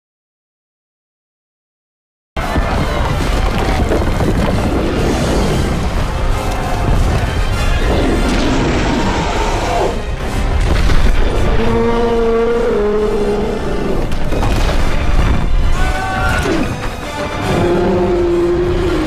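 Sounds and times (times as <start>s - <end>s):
dramatic music: 2.4s - 19.0s.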